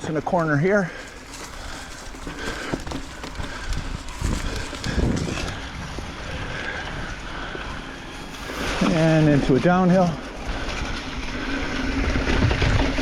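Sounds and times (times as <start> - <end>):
bike tyre noise on dirt: 0.0 - 13.0
bike knocks and rattles: 1.0 - 5.6.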